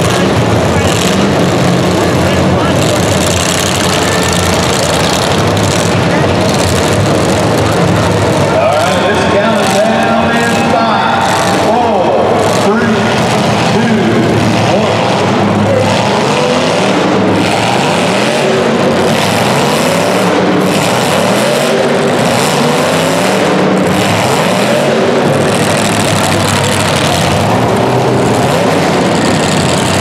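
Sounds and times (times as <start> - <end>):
racing engines passing: 0.0 - 30.0.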